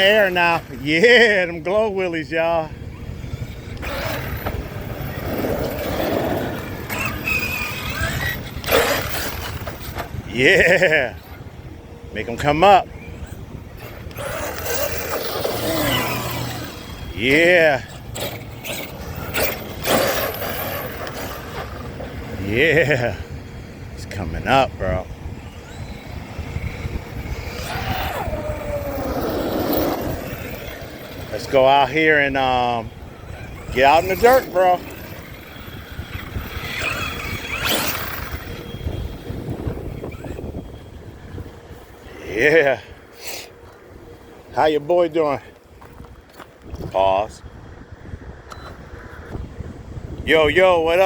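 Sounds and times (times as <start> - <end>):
electric toy truck motor whining: 0.0 - 1.2, 2.8 - 11.8, 12.4 - 24.0, 24.9 - 44.6
tyres rushing over ground: 0.0 - 11.6, 12.2 - 42.2
tyre rolling noise: 3.8 - 10.2, 27.5 - 31.6.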